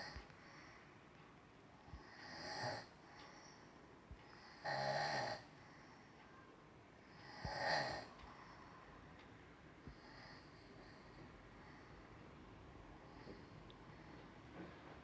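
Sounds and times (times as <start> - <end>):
woman snoring: 2.0 - 2.9, 4.4 - 5.5, 7.2 - 8.1.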